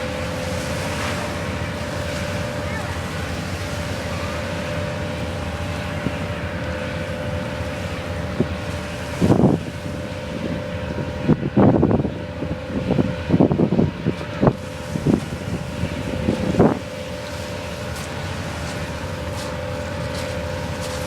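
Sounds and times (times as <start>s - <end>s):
ferry engines humming: 0.0s - 21.0s
wind buffeting microphone: 0.0s - 21.0s.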